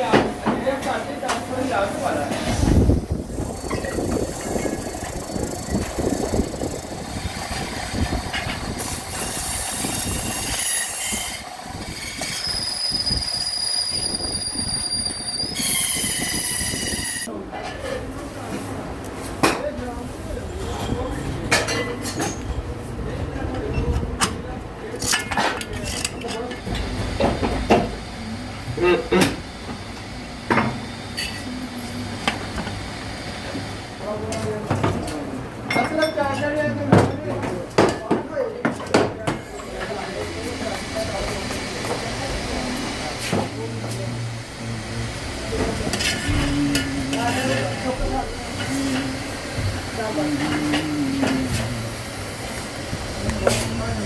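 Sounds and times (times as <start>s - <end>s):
machinery rumbling rattle: 2.4s - 10.3s, 43.5s - 54.0s.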